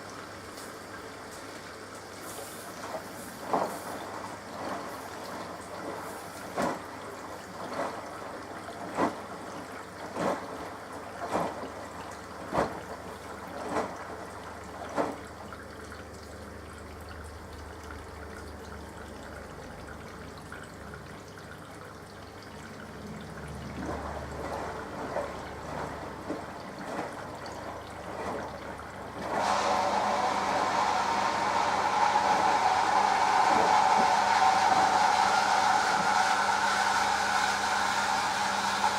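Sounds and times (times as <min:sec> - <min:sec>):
laundry sloshing in washing machine: 0:00.0 - 0:17.0, 0:22.7 - 0:38.9
water trickling: 0:00.0 - 0:29.2
low machine hum: 0:11.0 - 0:38.9.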